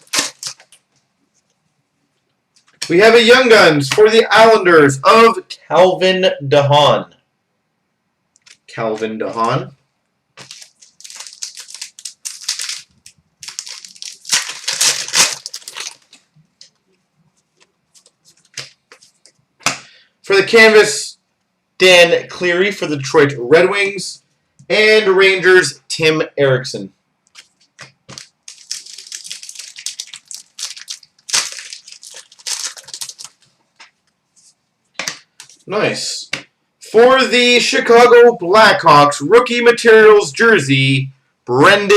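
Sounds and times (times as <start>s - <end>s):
foil wrappers crinkling and tearing: 0.0s - 0.8s, 10.4s - 16.3s, 27.3s - 33.6s.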